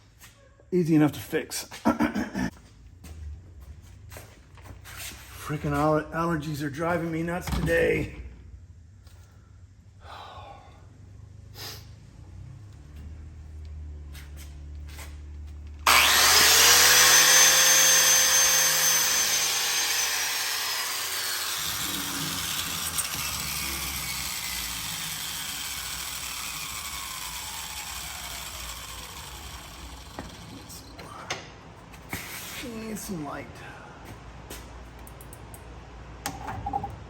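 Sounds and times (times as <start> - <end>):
power grinder whine: 15.8 - 31.0.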